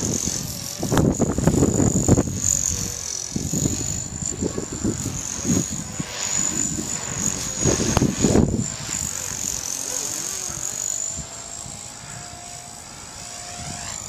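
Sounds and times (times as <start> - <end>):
wind buffeting microphone: 0.0 - 9.7
rc helicopter rotor whining: 0.0 - 14.0.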